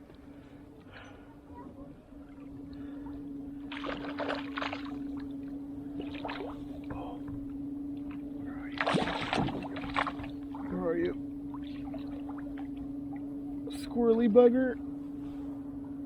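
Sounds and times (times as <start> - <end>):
steady low hum: 0.0 - 16.0
water splashing: 3.6 - 7.2, 8.0 - 13.3.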